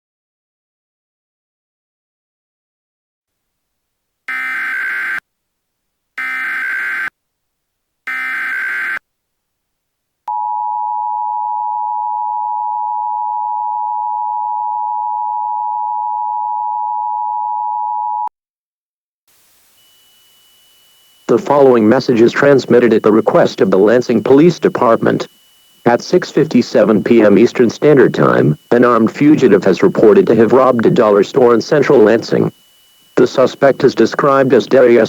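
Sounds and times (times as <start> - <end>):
data bursts: 19.8 - 35.0
two-tone attention signal: 19.8 - 35.0.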